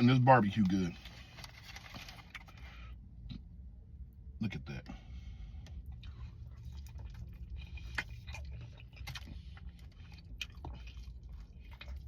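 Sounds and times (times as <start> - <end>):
sharp clicks and crunches: 0.0 - 2.7
steady low hum: 0.0 - 12.0
person chewing meat: 5.5 - 12.0.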